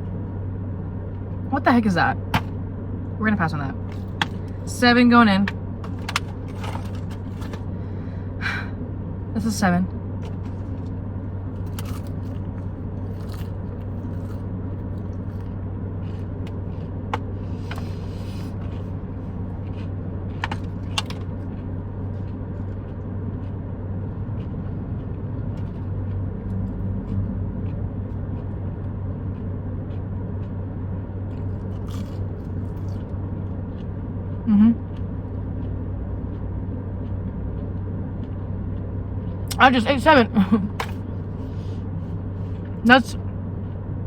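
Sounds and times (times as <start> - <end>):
car engine idling: 0.0 - 24.2
person chewing food: 3.8 - 4.7, 10.2 - 39.5.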